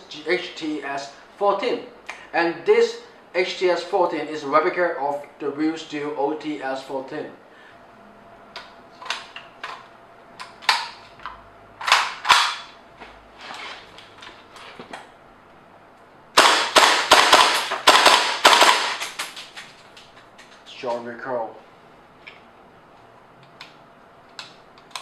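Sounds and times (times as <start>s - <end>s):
gun handling clicks and clacks: 10.4s - 12.8s, 16.4s - 20.6s, 23.5s - 25.0s
airsoft rifle shots: 16.4s - 19.4s.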